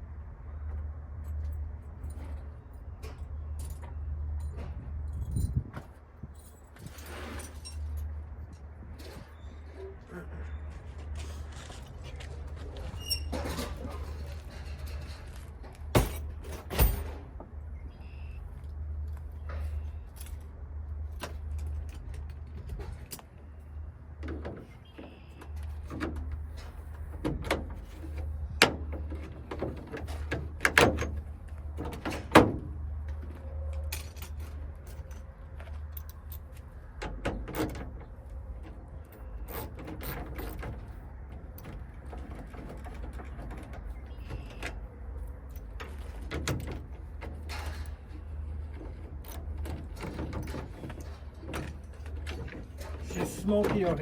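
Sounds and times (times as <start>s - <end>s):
hand tools clicking and clattering: 45.5s - 54.0s.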